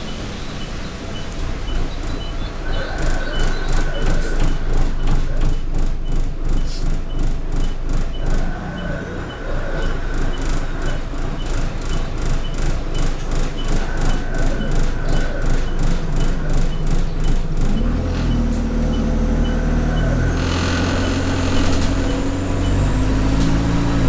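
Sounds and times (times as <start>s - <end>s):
bus engine and road rumble: 0.0s - 24.0s
faint regular ticking: 1.2s - 24.0s
high turbo whine: 7.8s - 24.0s.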